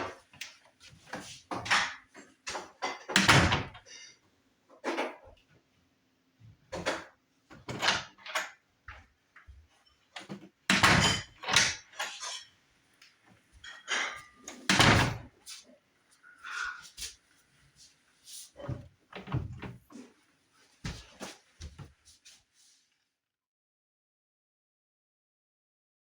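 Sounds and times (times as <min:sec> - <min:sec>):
knocks and clunks: 0:18.6 - 0:19.8.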